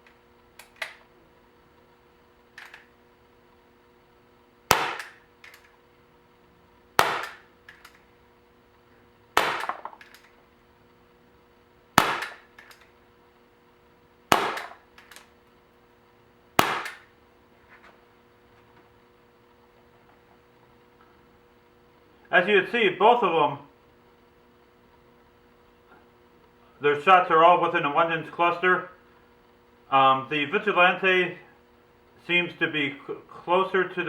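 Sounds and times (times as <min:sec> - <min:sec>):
air pistol shots: 0:02.6 - 0:02.8, 0:04.7 - 0:05.7, 0:07.0 - 0:08.0, 0:09.4 - 0:10.3, 0:12.0 - 0:12.8, 0:14.3 - 0:15.2, 0:16.6 - 0:17.1.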